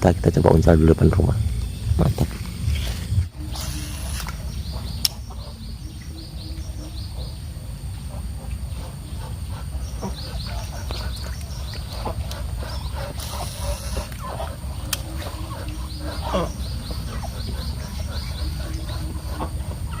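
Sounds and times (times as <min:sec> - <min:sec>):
bird chirping: 0:00.0 - 0:20.0
steady low rumble: 0:00.0 - 0:20.0
sharp click: 0:05.0 - 0:05.2.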